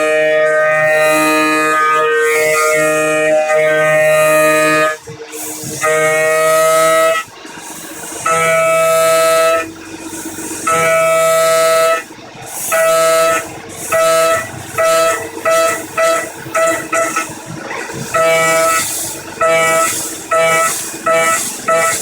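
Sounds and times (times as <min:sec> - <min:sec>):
end mill screeching cutting steel: 0:00.0 - 0:22.0.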